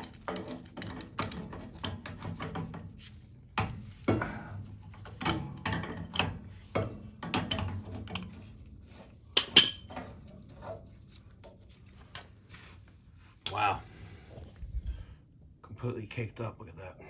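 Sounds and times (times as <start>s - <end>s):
metal tools clinking and knocking: 0.0s - 2.8s, 4.9s - 8.6s, 9.4s - 10.8s.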